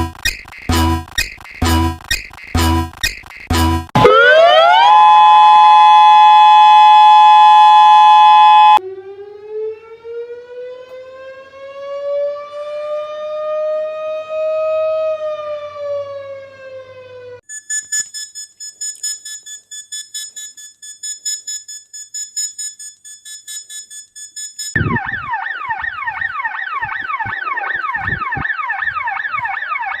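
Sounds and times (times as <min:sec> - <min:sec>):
siren rising and falling: 0:04.0 - 0:17.4, 0:24.8 - 0:30.0
two-tone alert signal: 0:06.4 - 0:08.8, 0:17.5 - 0:26.2
rapidly pulsing high beep: 0:06.6 - 0:08.8, 0:17.5 - 0:26.1.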